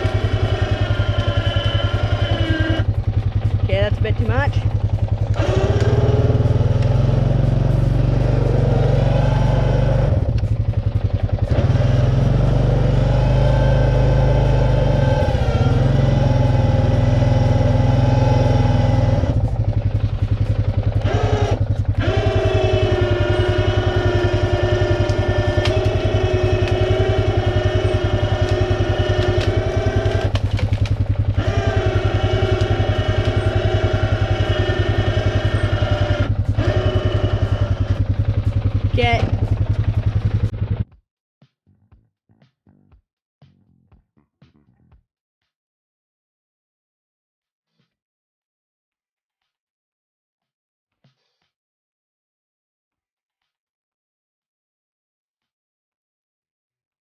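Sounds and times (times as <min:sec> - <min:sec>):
electric winch whining: 0:00.0 - 0:40.5
four-wheeler engine running: 0:00.0 - 0:40.9.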